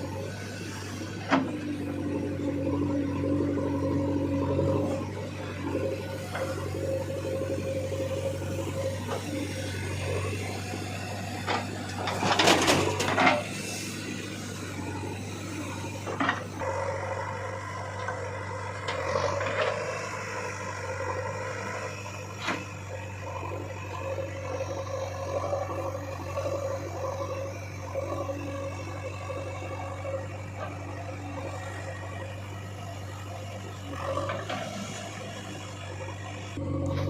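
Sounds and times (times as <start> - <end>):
backhoe engine humming: 0.0 - 37.0.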